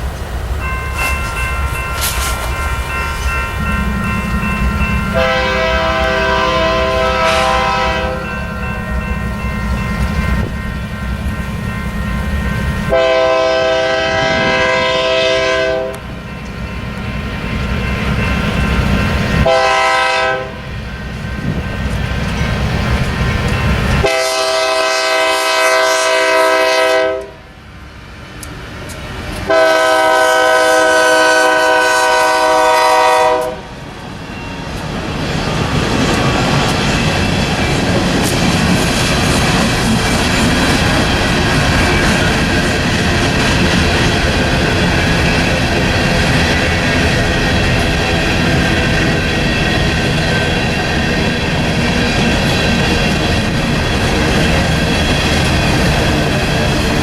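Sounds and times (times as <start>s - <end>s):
train rolling on rails: 0.0s - 57.0s
locomotive air horn blasts: 5.2s - 8.3s, 12.9s - 16.1s, 19.4s - 20.6s, 24.0s - 27.4s, 29.5s - 33.7s.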